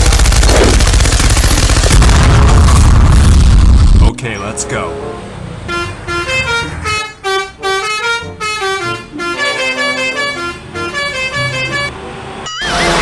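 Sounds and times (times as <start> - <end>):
bus horn playing melody: 4.4 - 13.0.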